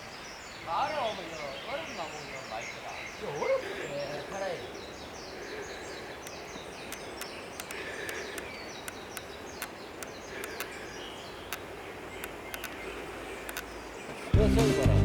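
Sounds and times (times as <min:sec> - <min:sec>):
birds chirping: 0:00.0 - 0:15.0
steady background hiss: 0:00.0 - 0:15.0
sharp clicks: 0:06.2 - 0:14.2.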